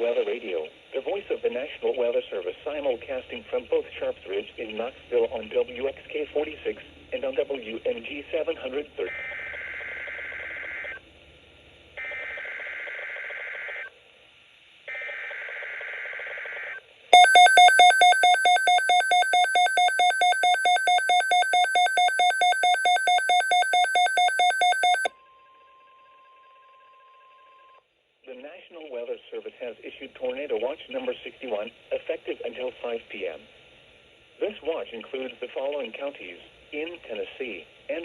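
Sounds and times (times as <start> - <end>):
rapid loud alarm beeps: 17.2 - 25.1
faint steady warning tone: 17.2 - 27.8.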